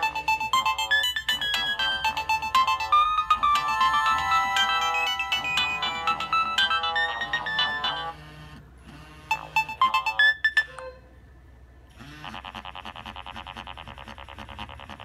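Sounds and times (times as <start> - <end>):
beeping phone ringtone melody: 0.0 - 8.4, 9.3 - 10.8.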